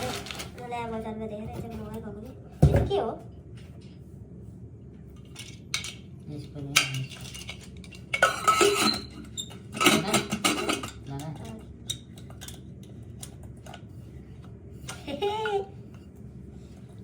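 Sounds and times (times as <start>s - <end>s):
metal pots and pans clinking: 6.8s - 11.6s.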